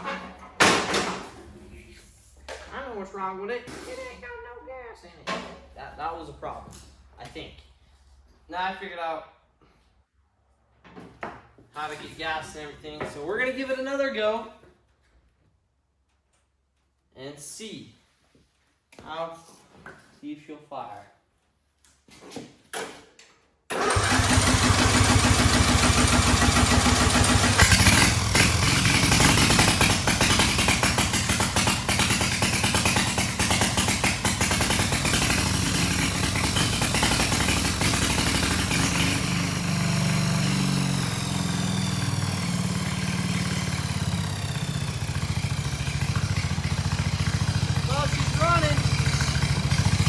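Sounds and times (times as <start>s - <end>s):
riding lawnmower engine running: 23.7s - 50.0s.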